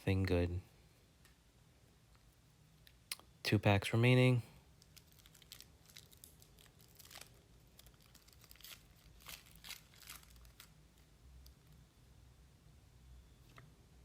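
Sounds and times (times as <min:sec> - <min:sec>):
foil wrapper crinkling and tearing: 0:04.7 - 0:11.8
trading cards rustling and clicking: 0:04.8 - 0:11.8.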